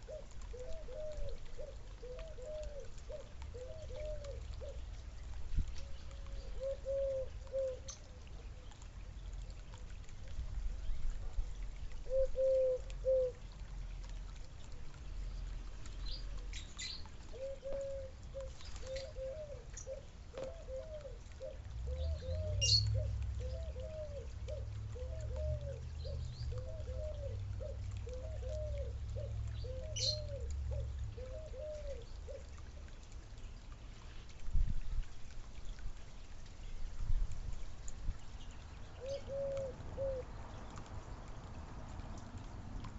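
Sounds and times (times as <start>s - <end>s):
dove cooing: 0.0s - 4.8s, 6.1s - 8.1s, 12.0s - 13.4s, 16.3s - 32.9s, 39.0s - 40.3s
small birds chirping: 15.0s - 35.0s, 37.5s - 41.3s.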